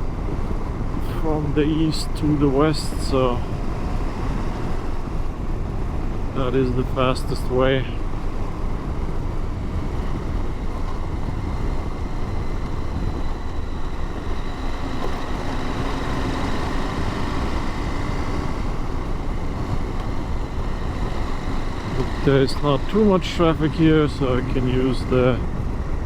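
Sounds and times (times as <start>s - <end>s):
faint whine: 0.0s - 26.0s
wind noise: 0.0s - 26.0s
motorcycle engine: 7.6s - 26.0s.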